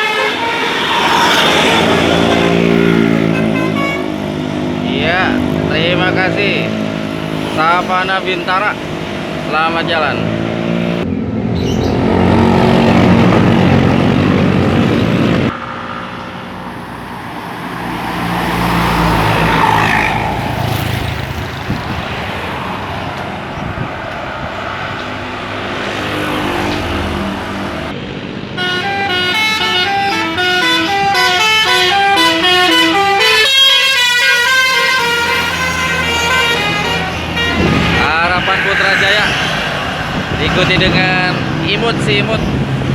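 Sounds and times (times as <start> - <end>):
bus musical horn melody: 0.0 - 4.8, 28.5 - 38.4
buses passing: 0.0 - 42.9.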